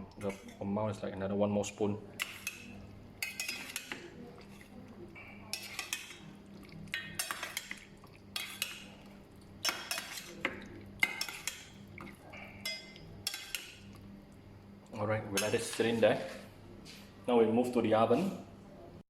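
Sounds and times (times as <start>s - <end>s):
spoon scraping and clinking bowl: 2.2s - 4.8s, 5.5s - 6.2s, 9.6s - 11.8s.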